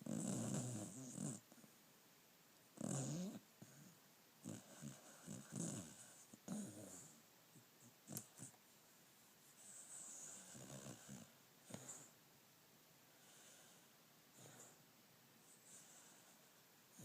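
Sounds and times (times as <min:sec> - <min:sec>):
dog snoring: 0:00.0 - 0:01.6, 0:02.8 - 0:07.2, 0:08.0 - 0:08.6, 0:09.6 - 0:12.1, 0:13.2 - 0:14.8, 0:15.6 - 0:17.0.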